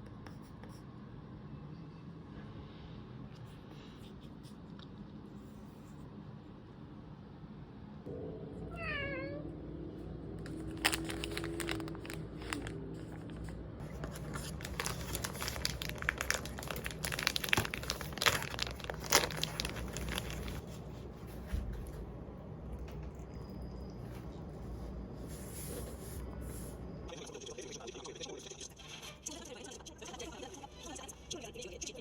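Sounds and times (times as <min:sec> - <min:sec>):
cat meowing: 0:08.7 - 0:09.6
crinkling and clicking handling: 0:10.4 - 0:20.8.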